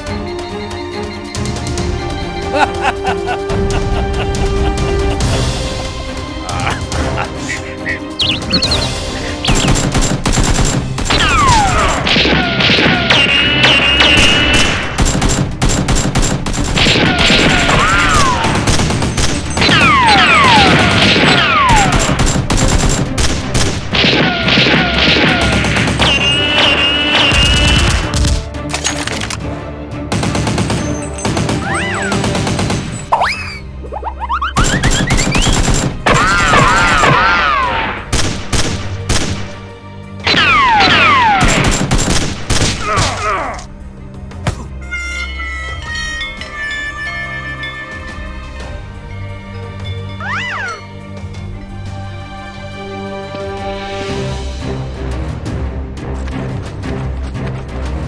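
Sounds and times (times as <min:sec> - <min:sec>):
background music: 0:00.0 - 0:58.0
gunshot bursts: 0:08.5 - 0:28.3, 0:40.3 - 0:42.8.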